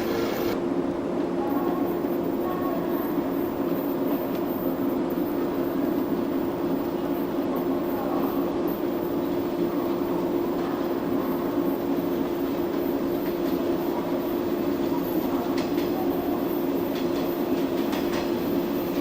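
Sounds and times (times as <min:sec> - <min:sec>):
train humming drone: 0:00.0 - 0:00.7.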